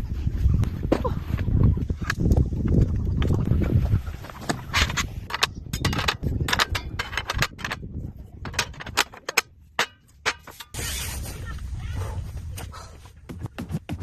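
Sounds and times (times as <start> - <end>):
wind rumbling on microphone: 0.0 - 9.1
hard objects clattering: 4.4 - 10.8.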